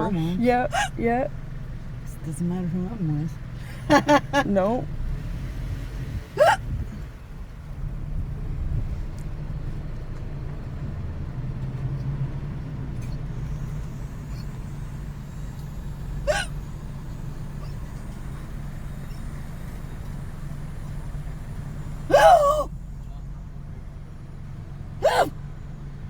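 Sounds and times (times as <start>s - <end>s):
car engine idling: 0.0s - 26.0s
person hiccuping: 0.7s - 1.0s, 6.4s - 6.8s, 16.3s - 16.6s, 22.1s - 22.7s, 25.0s - 25.4s.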